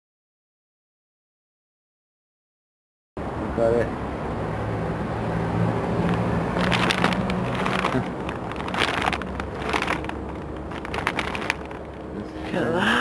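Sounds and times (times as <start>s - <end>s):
vehicle engine humming: 3.2s - 13.0s
crackling and rustling: 5.8s - 12.8s.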